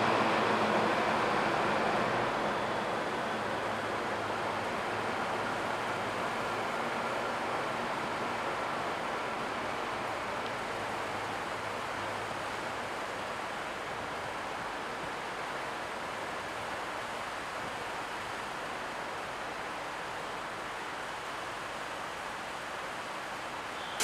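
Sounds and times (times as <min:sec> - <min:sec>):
train rushing noise: 0:00.0 - 0:06.7
faint high whine: 0:23.7 - 0:24.0.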